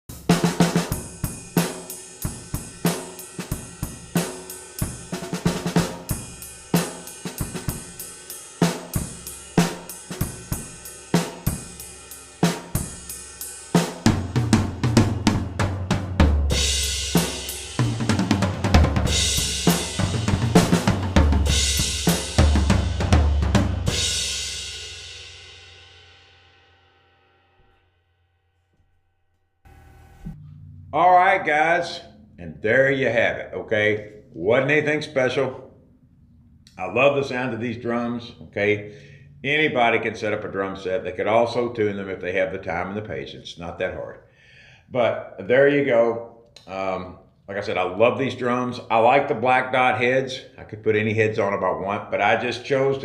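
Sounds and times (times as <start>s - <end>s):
drum kit playing: 0.0s - 26.9s.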